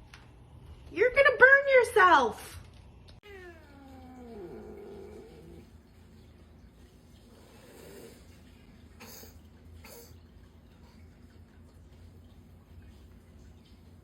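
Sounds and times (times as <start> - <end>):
cat meowing low: 3.2 - 5.5.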